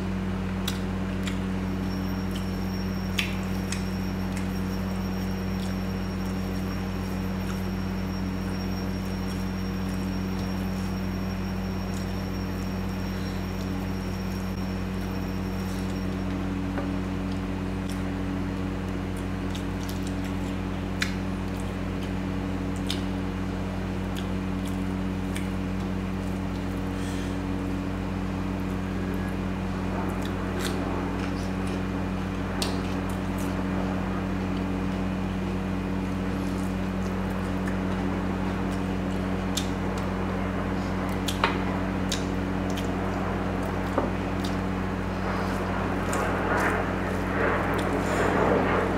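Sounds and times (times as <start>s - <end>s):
steady low hum: 0.0s - 48.9s
wet chewing and mouth smacks: 0.6s - 1.4s, 22.8s - 23.1s, 42.1s - 42.9s.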